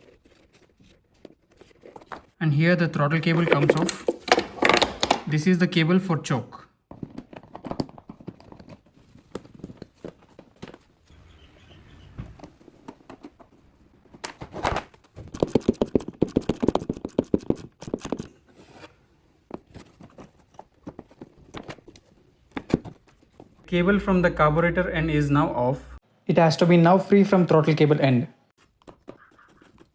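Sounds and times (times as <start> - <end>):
metallic clicks and rattles of cable: 14.2 - 18.4.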